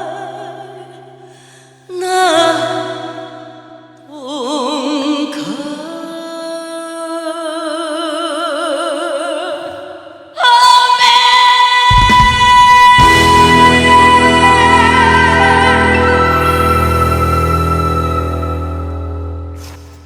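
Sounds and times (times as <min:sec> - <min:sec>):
person singing with vibrato: 0:00.0 - 0:19.8
heavy bass: 0:11.9 - 0:20.0
music with sustained chords: 0:13.0 - 0:20.0.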